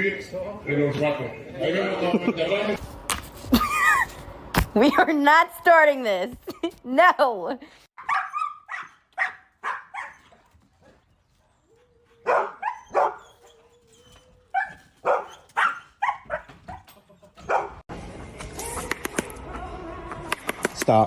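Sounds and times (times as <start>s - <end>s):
dog barking: 8.0s - 10.3s, 12.2s - 13.4s, 14.6s - 16.8s, 17.4s - 17.8s.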